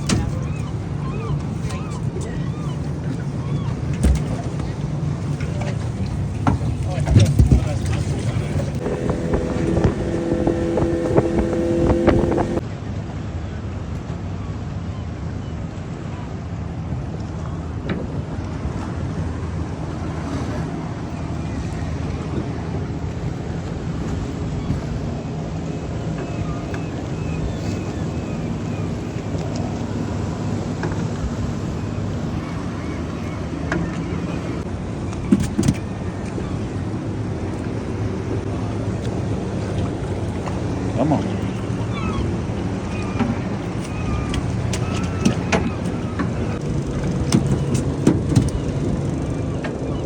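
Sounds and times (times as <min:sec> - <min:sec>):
boat motor running: 0:00.0 - 0:12.6, 0:17.6 - 0:50.0
water noise: 0:00.0 - 0:12.6, 0:17.0 - 0:50.0
wind buffeting microphone: 0:00.0 - 0:12.6, 0:18.0 - 0:50.0.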